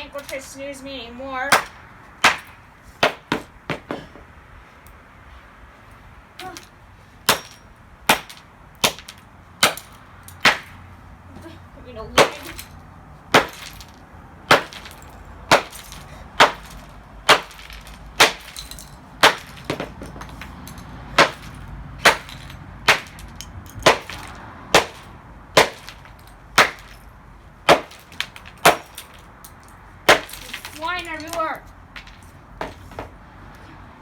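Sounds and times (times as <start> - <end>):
hammer smashing plastic clock: 7.3 - 10.8, 13.3 - 27.0, 27.7 - 29.2, 30.1 - 31.4.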